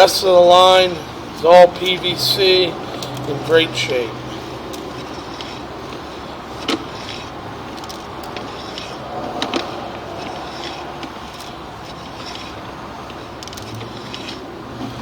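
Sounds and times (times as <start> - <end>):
steady background noise: 0.0 - 15.0.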